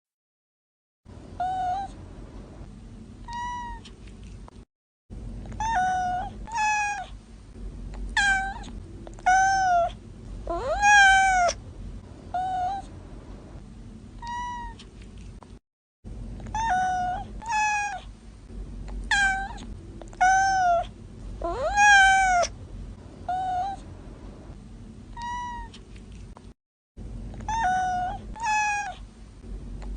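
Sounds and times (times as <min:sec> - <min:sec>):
low steady background hum: 0:01.1 - 0:29.9
kittens meowing: 0:08.2 - 0:11.6, 0:16.5 - 0:18.1, 0:19.1 - 0:22.5.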